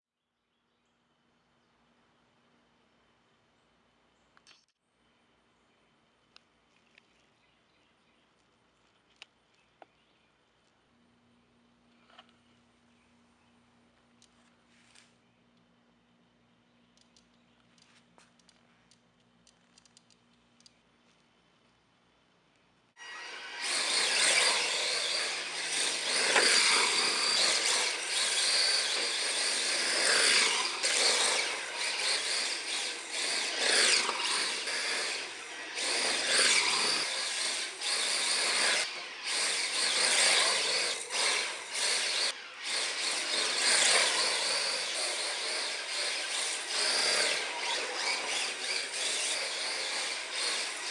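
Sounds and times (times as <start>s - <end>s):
faint clicks: 8.3s - 10.0s, 16.8s - 21.8s
electric rc car motor whine: 23.0s - 50.9s.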